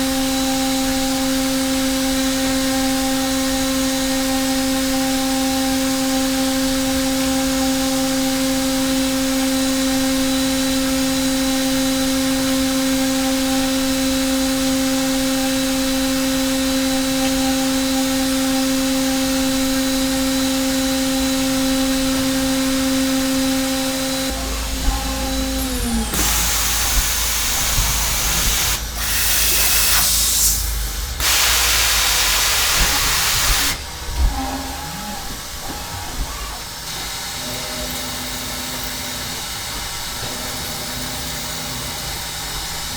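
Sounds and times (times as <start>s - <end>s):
milling machine whine: 0.0s - 42.9s
cutting hiss: 24.5s - 33.9s.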